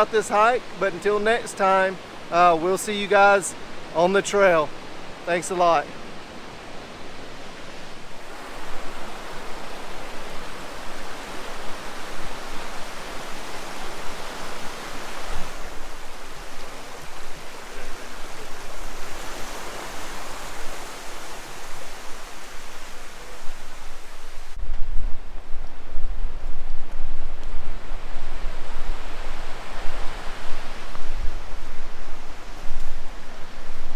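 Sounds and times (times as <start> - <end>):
waterfall flowing: 0.0 - 24.6.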